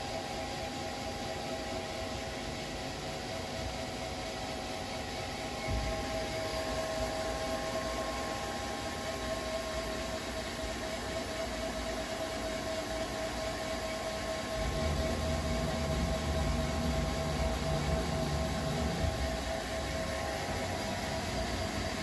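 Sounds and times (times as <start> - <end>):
lathe whining: 0.0 - 22.0
low rumble: 14.6 - 20.5.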